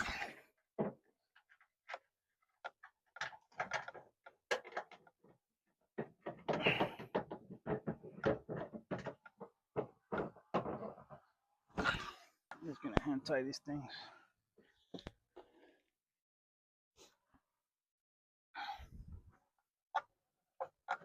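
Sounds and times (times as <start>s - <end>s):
parts clicking and knocking: 0.7s - 11.4s, 19.9s - 21.0s.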